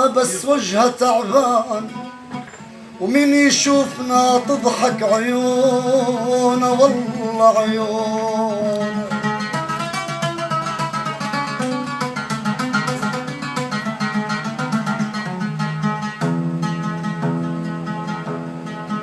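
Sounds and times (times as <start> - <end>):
person singing: 0.0 - 2.2, 3.0 - 10.1
oud plucked notes: 0.0 - 19.0.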